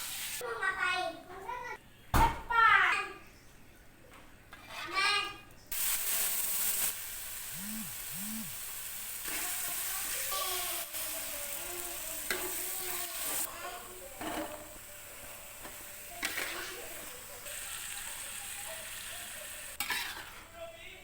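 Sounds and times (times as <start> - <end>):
food sizzling in hot oil: 0.0 - 0.4, 5.7 - 20.4.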